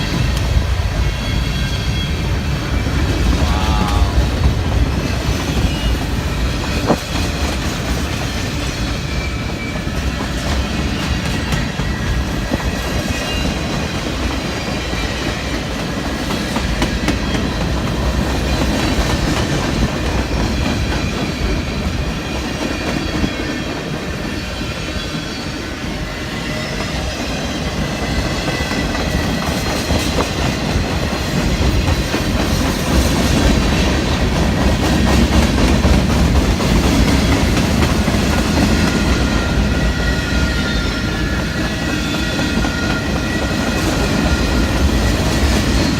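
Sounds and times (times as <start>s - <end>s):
train rumble: 0.0s - 45.9s
high wheel squeal: 39.0s - 45.9s.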